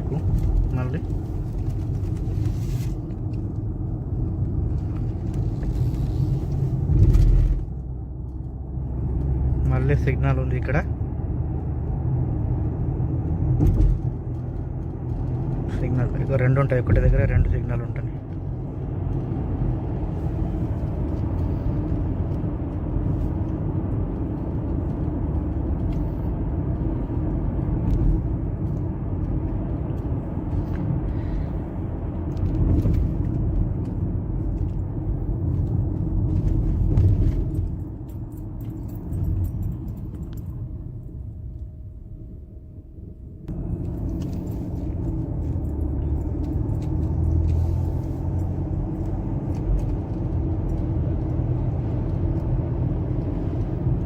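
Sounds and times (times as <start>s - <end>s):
car road noise rumble: 0.0s - 54.0s.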